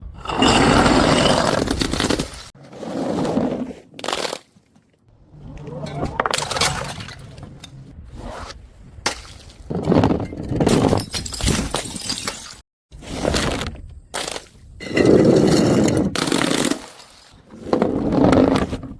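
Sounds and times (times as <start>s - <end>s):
glass bottles shattering: 10.4s - 12.6s.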